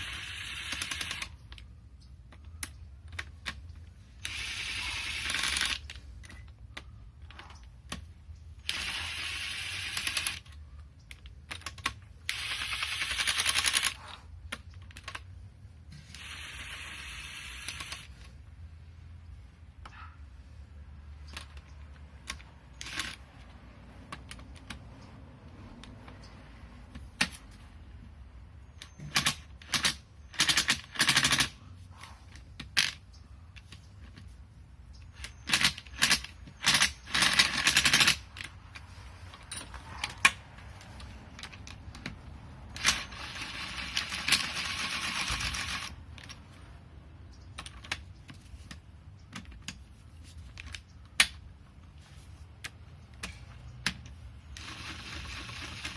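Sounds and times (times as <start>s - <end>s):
power tool rattling bolts out: 28.6s - 31.6s, 35.1s - 40.4s, 42.7s - 46.4s.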